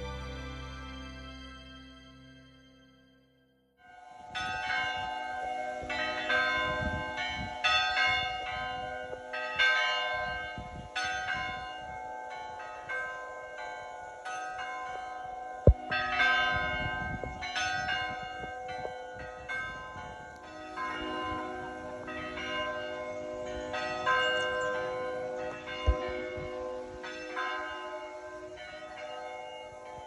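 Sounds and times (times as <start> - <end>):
church bells ringing: 0.0 - 30.0.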